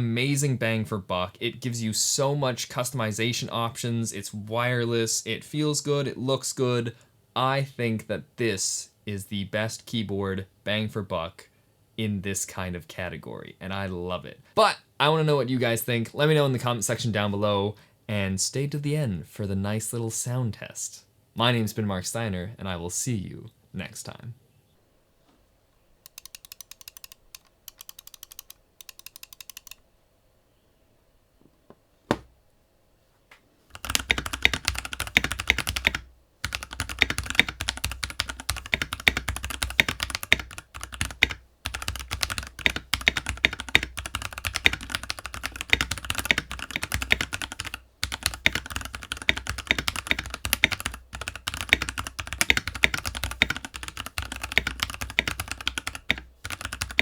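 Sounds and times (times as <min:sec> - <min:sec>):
mechanical keyboard keys clacking: 0:26.1 - 0:29.8, 0:33.8 - 0:57.0.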